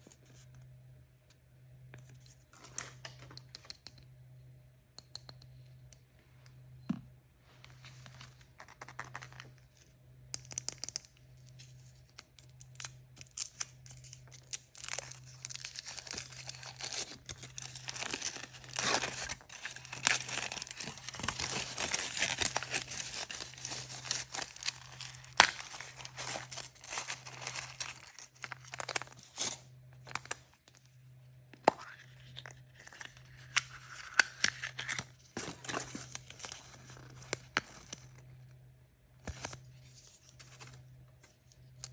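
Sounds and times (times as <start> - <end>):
packaging clicks and crunches: 8.1 - 9.5, 12.4 - 30.8, 31.6 - 38.3
plastic wrapping tearing and crinkling: 13.2 - 30.4.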